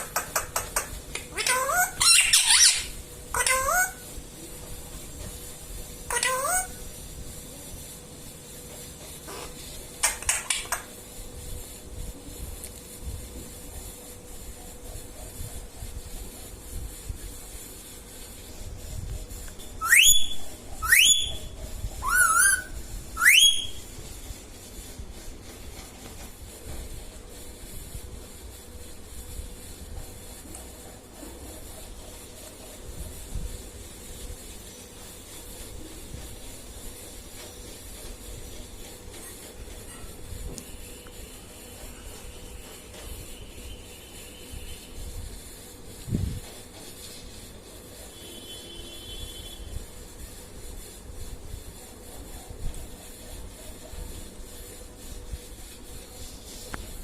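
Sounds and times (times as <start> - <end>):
parakeet whistled calls: 1.3 - 4.0, 6.1 - 6.8, 19.8 - 23.8.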